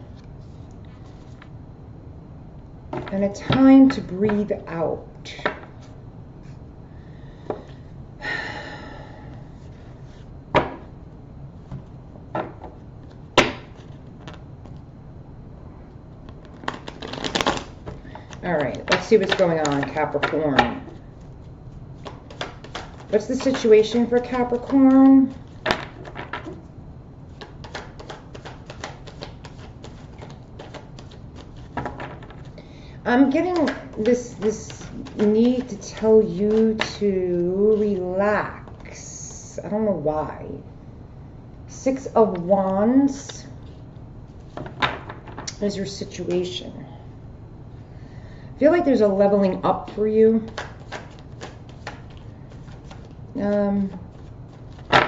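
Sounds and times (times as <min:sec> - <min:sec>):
cards being shuffled: 0:13.0 - 0:14.8, 0:16.3 - 0:26.7, 0:27.3 - 0:32.6, 0:33.2 - 0:39.0, 0:49.6 - 0:55.0.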